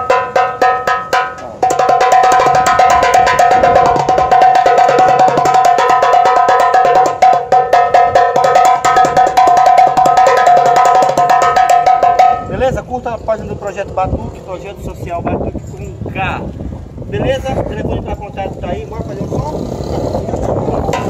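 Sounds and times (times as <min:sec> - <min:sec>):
homemade metal drum struck rapidly: 0:00.0 - 0:12.8, 0:20.6 - 0:21.0.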